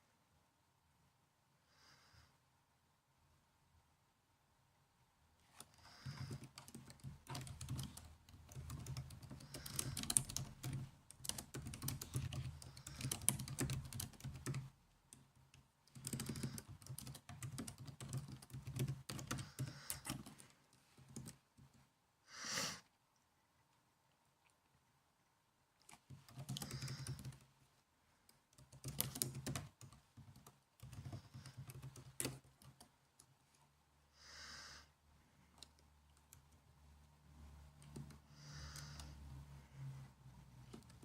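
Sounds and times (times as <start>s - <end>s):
laptop keyboard clicks: 5.9s - 14.7s, 15.9s - 20.4s, 26.1s - 27.4s, 28.6s - 32.9s.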